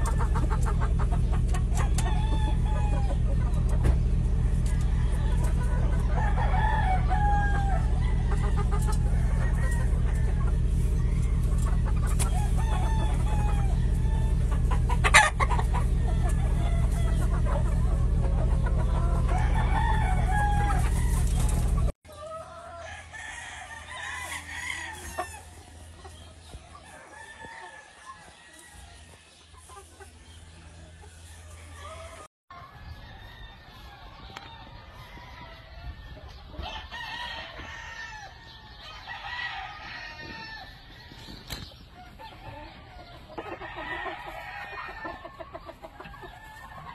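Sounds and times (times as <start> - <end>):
steady low rumble: 0.0 - 22.0
hens clucking: 0.0 - 46.9
roosters crowing: 0.0 - 46.9.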